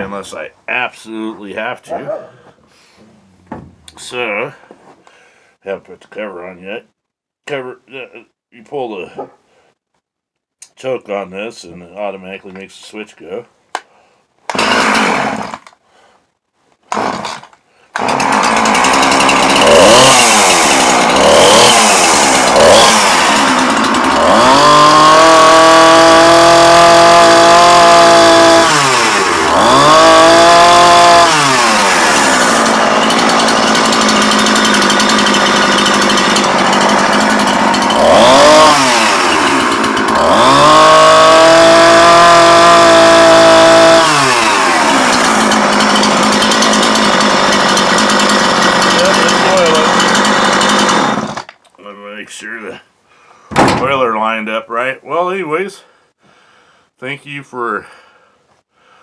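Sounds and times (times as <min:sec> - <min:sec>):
chainsaw pull-starting: 0:14.5 - 0:15.8, 0:16.9 - 0:51.7
chainsaw revving: 0:14.5 - 0:15.8, 0:16.9 - 0:51.5.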